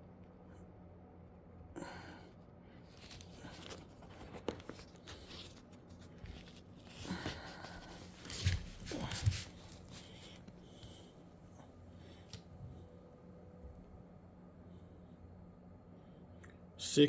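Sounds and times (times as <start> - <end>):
low steady hum: 0.0 - 17.0
chair handling clicks and rustles: 3.0 - 10.6.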